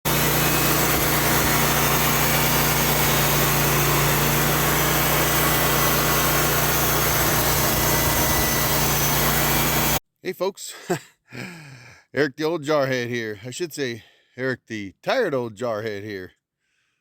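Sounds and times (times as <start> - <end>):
machine engine humming: 0.1 - 10.0.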